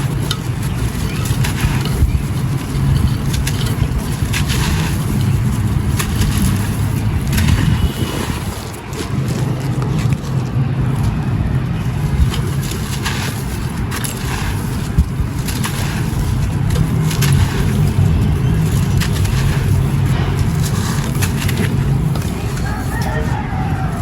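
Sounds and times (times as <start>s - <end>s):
clay pot crumbling: 0.0s - 24.0s
steady low rumble: 0.0s - 24.0s.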